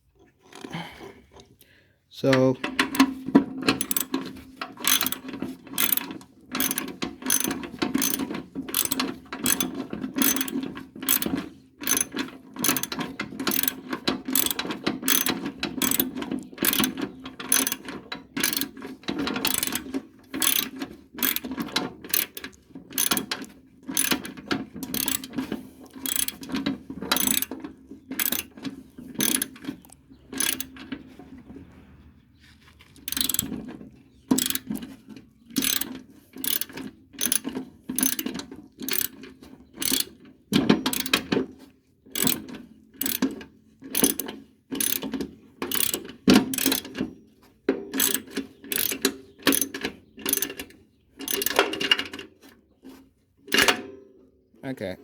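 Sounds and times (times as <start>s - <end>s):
socket ratchet clicking: 3.8s - 4.1s, 4.8s - 5.2s, 5.8s - 11.2s, 11.8s - 12.9s, 13.5s - 17.8s, 19.4s - 19.8s, 20.4s - 21.4s, 22.1s - 25.3s, 26.0s - 26.5s, 27.1s - 27.5s, 28.2s - 28.5s, 29.2s - 30.7s, 33.1s - 33.5s, 34.3s - 34.8s, 35.6s - 37.4s, 38.0s - 39.2s, 39.8s - 40.1s, 40.9s - 41.2s, 42.2s - 42.4s, 43.0s - 43.2s, 44.0s - 44.2s, 44.8s - 45.0s, 45.7s - 46.8s, 48.0s - 49.7s, 51.3s - 51.6s.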